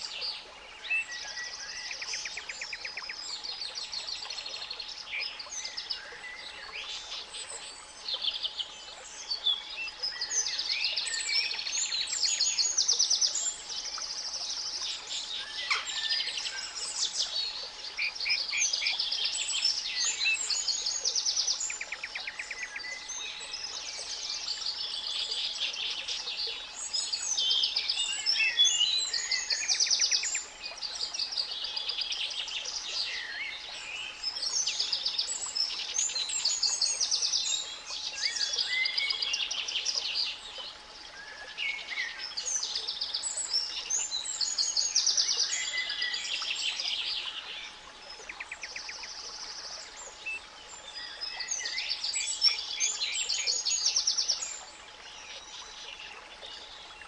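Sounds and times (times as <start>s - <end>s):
soft hiss of noise: 0.0s - 57.0s
songbirds chirping and trilling: 0.0s - 57.0s.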